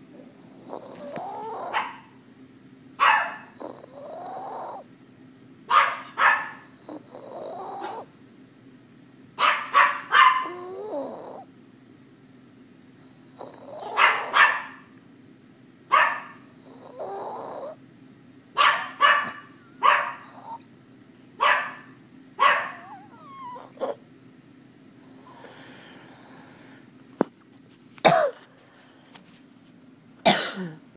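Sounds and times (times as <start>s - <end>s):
dog barking: 1.2s - 2.2s, 3.0s - 4.8s, 5.7s - 8.1s, 9.4s - 11.0s, 13.4s - 15.0s, 15.9s - 17.5s, 18.6s - 20.6s, 21.4s - 24.0s.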